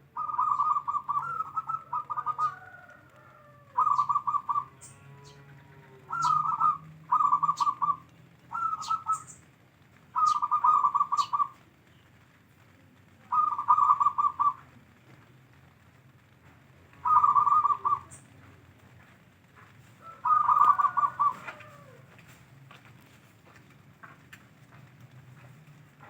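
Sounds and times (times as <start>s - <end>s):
dove cooing in staccato phrases: 0.0s - 9.4s, 10.1s - 11.8s, 13.1s - 14.8s, 16.9s - 18.8s, 20.0s - 22.4s.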